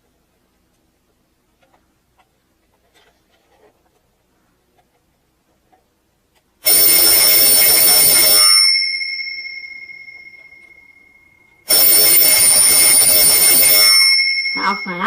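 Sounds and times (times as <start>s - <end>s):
alarm clock bells ringing: 6.6s - 15.0s.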